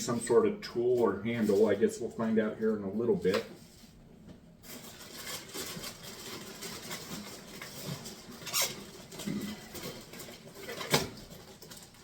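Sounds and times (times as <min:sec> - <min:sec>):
plastic packaging crinkling: 0:04.6 - 0:12.0.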